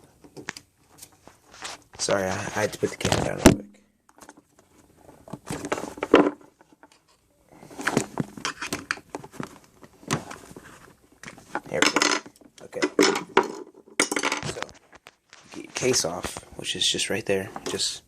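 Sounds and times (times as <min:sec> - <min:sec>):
screwdriver and plastic casing clattering: 0:07.8 - 0:10.4, 0:11.2 - 0:15.1.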